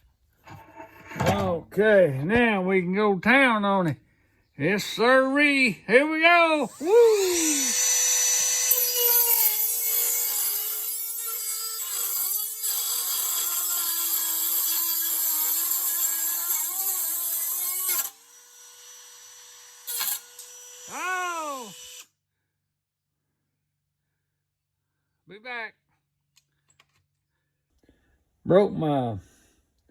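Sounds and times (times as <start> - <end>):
man exclaiming: 5.4 - 7.7, 20.9 - 21.8
rotary tool grinding metal: 6.6 - 22.1.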